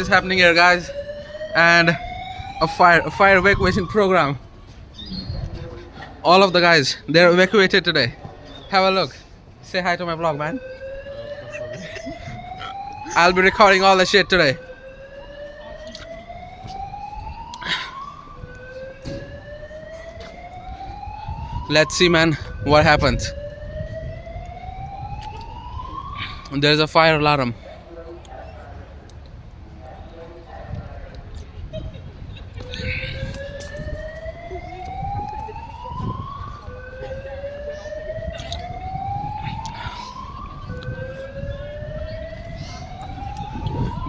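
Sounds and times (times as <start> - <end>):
fire alarm whoop: 0.0 - 4.4, 10.4 - 26.6, 32.6 - 44.0.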